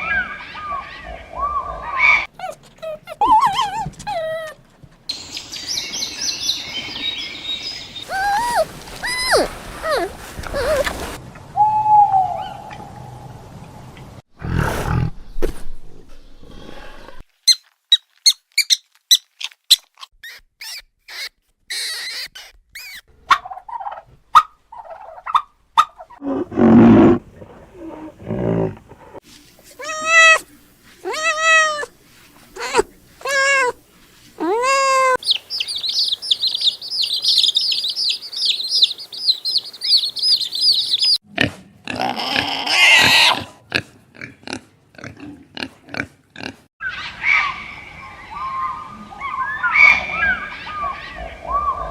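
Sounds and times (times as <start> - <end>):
rising and falling animal calls: 8.0 - 13.0, 29.8 - 31.9, 34.4 - 41.2, 46.8 - 51.9
steady high chirping: 35.2 - 41.2.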